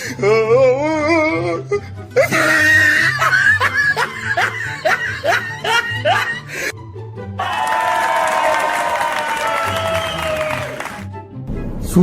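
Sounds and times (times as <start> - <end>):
person laughing: 2.3 - 6.5.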